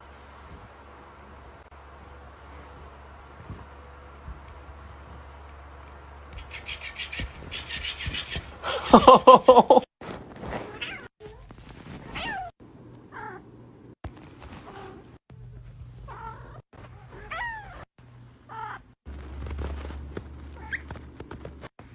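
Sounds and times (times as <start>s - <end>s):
cat meowing: 12.1s - 12.5s, 16.1s - 17.8s.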